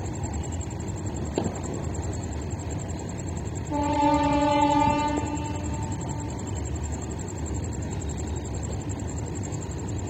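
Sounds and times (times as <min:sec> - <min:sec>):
horn tone: 0:03.7 - 0:06.4.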